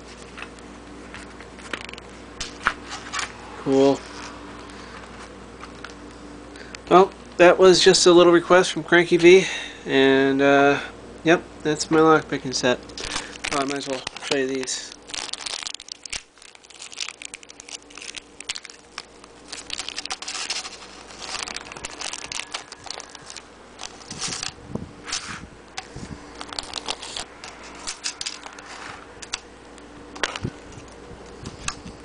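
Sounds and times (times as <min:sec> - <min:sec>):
rustling and crinkling: 0:00.0 - 0:06.1, 0:12.9 - 0:29.5.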